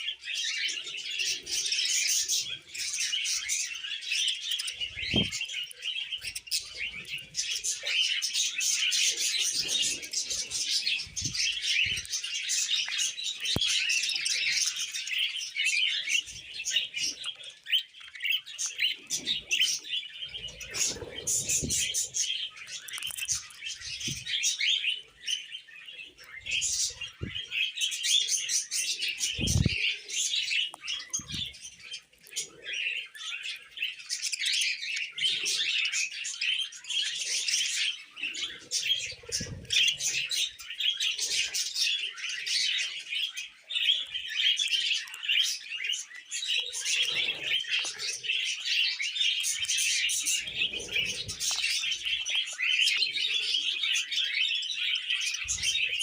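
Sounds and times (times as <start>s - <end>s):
budgerigars chirping: 0.0s - 56.0s.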